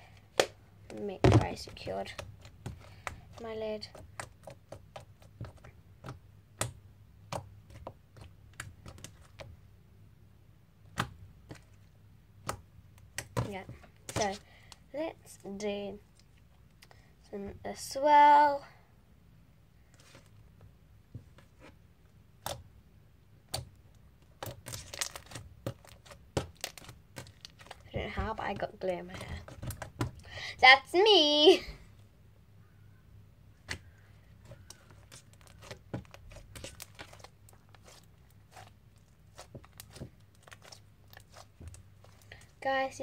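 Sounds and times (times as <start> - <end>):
slime squished by hand: 33.6 - 42.6.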